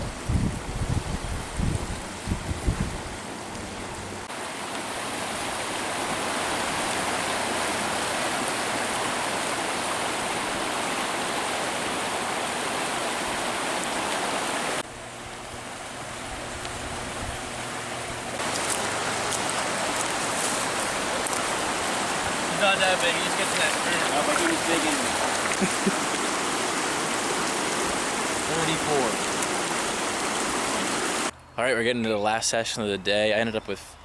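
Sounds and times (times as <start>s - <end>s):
wind rumble on microphone: 0.0s - 4.3s
flowing creek water: 0.0s - 31.3s.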